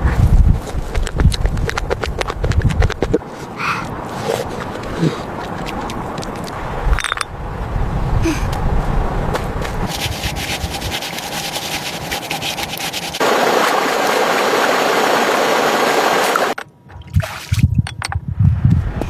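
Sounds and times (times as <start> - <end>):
water running and splashing: 9.9 - 16.6
dull low thumps: 16.9 - 19.0.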